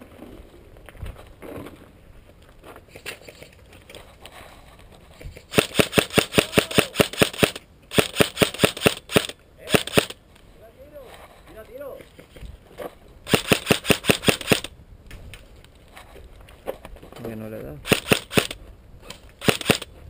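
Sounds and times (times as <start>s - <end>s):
airsoft gun firing rapid shots: 5.5s - 10.2s, 13.3s - 14.7s, 17.8s - 18.6s, 19.4s - 19.9s.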